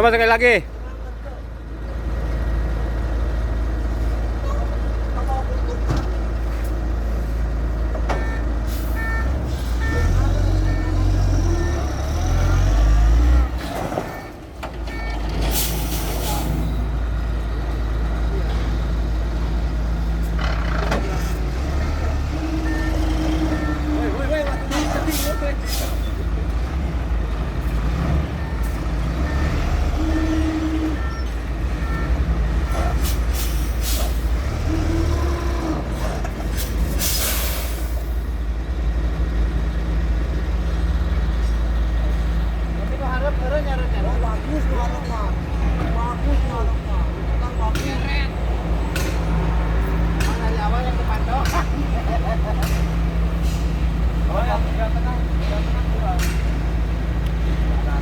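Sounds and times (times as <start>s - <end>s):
diesel truck engine running: 0.0s - 58.0s
short beeps: 8.2s - 11.0s, 14.1s - 15.2s, 22.6s - 26.2s, 28.4s - 32.3s
air brakes hissing: 8.6s - 9.8s, 15.5s - 16.8s, 24.7s - 26.3s, 32.9s - 34.4s, 36.5s - 38.3s, 52.6s - 54.0s
air-brake hiss: 33.0s - 34.3s, 36.6s - 38.2s.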